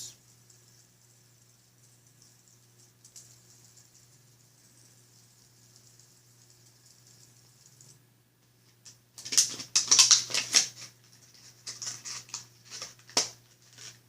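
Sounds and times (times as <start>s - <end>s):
packaging rustling: 9.2s - 14.0s.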